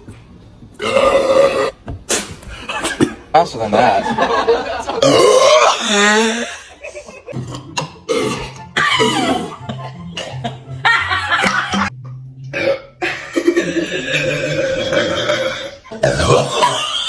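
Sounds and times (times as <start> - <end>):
people burping: 0.8 - 1.8, 3.8 - 11.9, 12.5 - 17.0
background music: 7.3 - 17.0.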